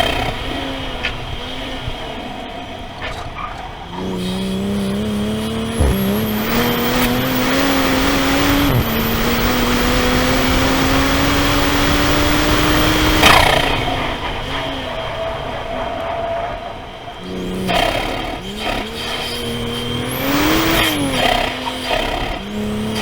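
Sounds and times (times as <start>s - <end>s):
car engine accelerating hard: 0.0s - 16.2s, 16.9s - 23.0s
exhaust crack: 3.0s - 15.1s.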